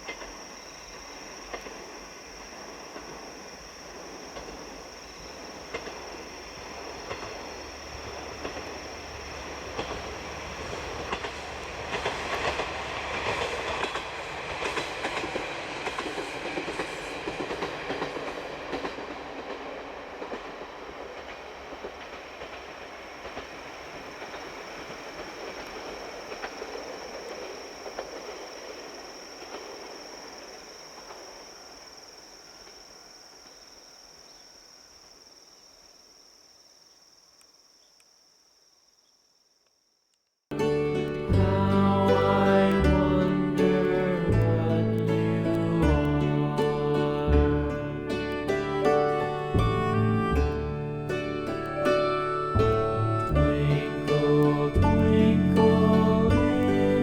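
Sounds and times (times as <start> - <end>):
wheels clicking over rail joints: 0.0 - 32.0, 40.5 - 57.0
diesel railcar running: 0.0 - 32.5, 40.5 - 57.0.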